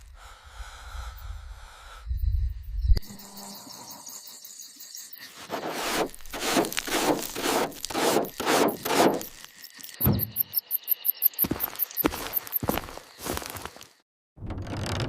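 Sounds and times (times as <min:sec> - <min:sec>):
scraping strokes: 0:05.2 - 0:09.5.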